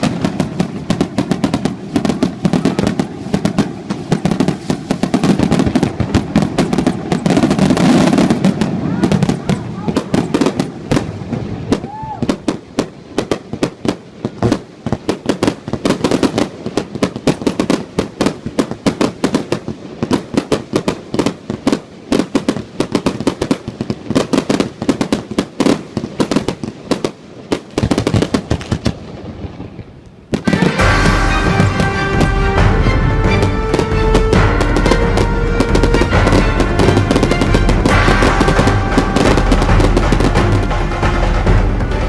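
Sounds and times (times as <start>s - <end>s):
firework whistle: 0.0s - 9.3s, 10.3s - 12.6s, 30.3s - 42.0s
fireworks cracking and banging: 0.0s - 42.0s
music: 30.5s - 42.0s.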